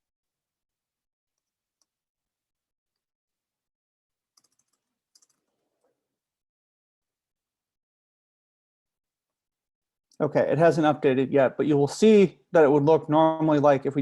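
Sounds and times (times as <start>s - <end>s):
computer keyboard clicks: 4.4s - 5.6s.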